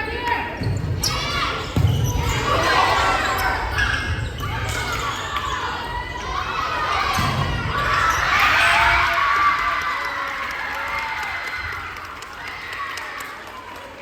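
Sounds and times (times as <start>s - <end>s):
spectators' voices and shouts: 0.0s - 14.0s
basketball bouncing on gym floor: 0.6s - 2.5s.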